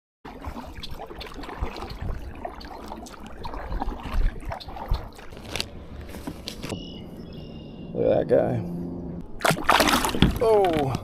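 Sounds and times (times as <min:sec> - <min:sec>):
water splashing around a boat: 0:00.3 - 0:06.8, 0:09.3 - 0:11.0.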